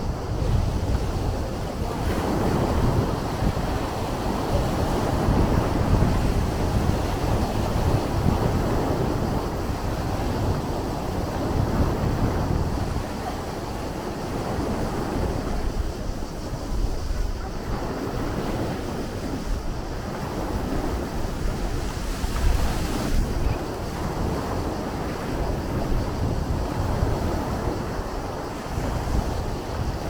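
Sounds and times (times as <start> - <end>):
sea waves washing on shore: 0.0 - 30.0
wind buffeting microphone: 0.0 - 30.0.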